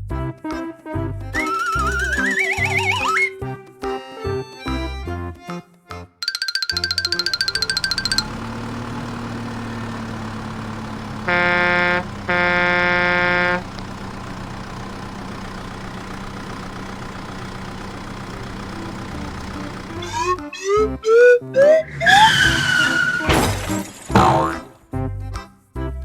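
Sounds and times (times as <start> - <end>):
horn honking: 1.4 - 3.4, 7.0 - 23.3
rising whistle-like glides: 1.4 - 3.4
cartoon engine humming: 1.4 - 3.5, 6.2 - 23.3.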